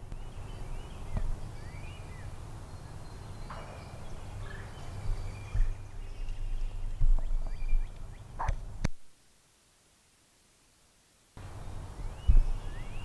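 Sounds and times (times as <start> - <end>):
birds chirping: 0.0 - 8.9, 11.4 - 13.0
steady low rumble: 0.0 - 9.0.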